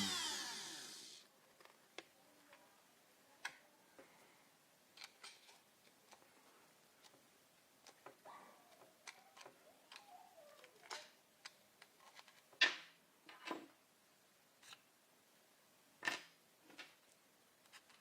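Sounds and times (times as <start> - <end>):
small objects clicking and rustling: 7.8 - 12.7.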